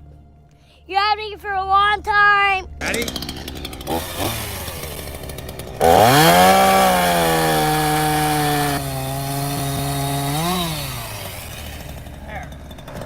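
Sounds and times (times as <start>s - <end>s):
chainsaw cutting a branch: 2.8s - 13.0s
chainsaw idling and revving: 2.8s - 13.0s.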